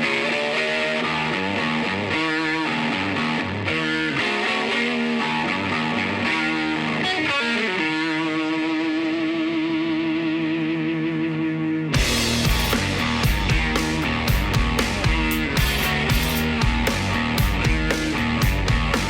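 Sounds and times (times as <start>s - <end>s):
distorted electric guitar rock: 0.0s - 19.0s.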